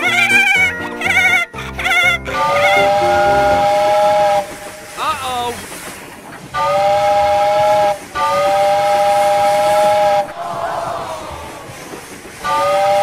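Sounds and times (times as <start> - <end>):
two-note whistle blasts: 1.1 - 4.6.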